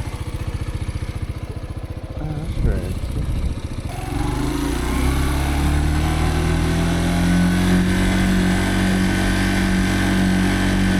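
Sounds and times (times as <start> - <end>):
dirt bike engine running: 0.0 - 10.9.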